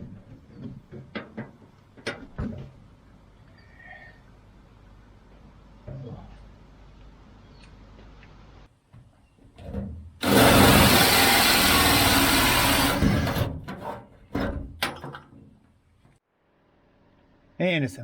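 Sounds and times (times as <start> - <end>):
power tool running: 10.2 - 13.5
sharp clicks and knocks: 12.0 - 16.2.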